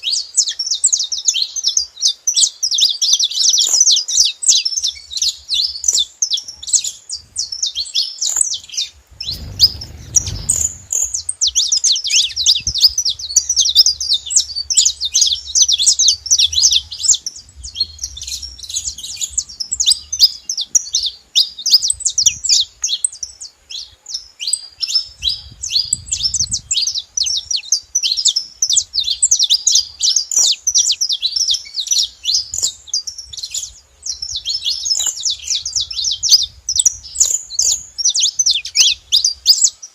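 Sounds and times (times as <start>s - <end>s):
finches chirping: 0.0s - 39.9s
low rumble: 9.0s - 21.0s.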